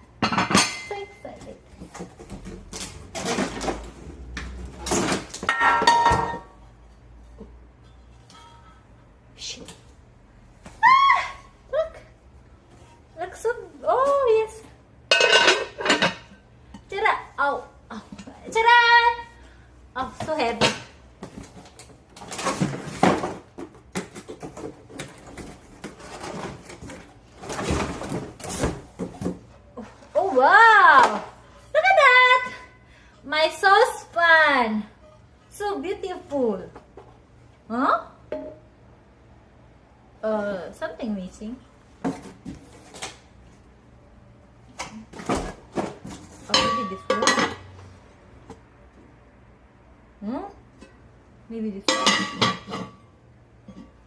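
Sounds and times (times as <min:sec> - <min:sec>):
cookware rustling and clattering: 0:00.2 - 0:06.6, 0:14.0 - 0:17.3, 0:20.1 - 0:31.8, 0:44.8 - 0:48.0, 0:51.8 - 0:54.0
packaging rustling and scraping: 0:21.3 - 0:29.4.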